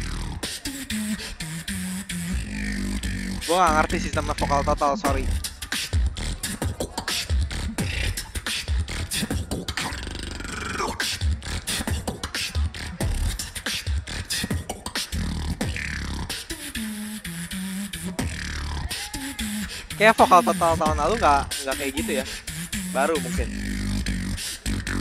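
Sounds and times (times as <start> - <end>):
beatboxing drum pattern: 0.0 - 25.0
pitched vocal line: 18.0 - 24.8.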